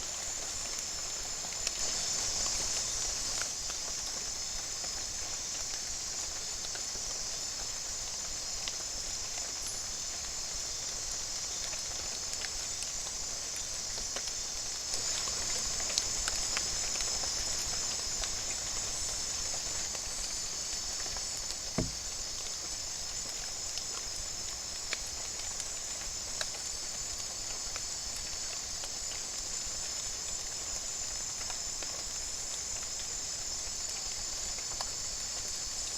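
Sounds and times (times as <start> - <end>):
forest insects chorus: 0.0 - 35.9
low thump: 21.8 - 22.1.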